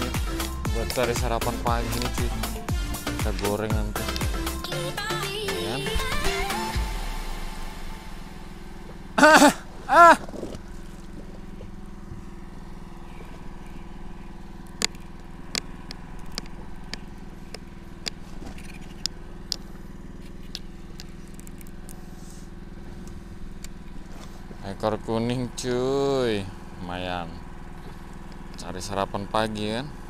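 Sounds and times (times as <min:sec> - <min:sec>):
boat engine humming: 0:00.0 - 0:30.0
sharp clicks: 0:14.6 - 0:19.6.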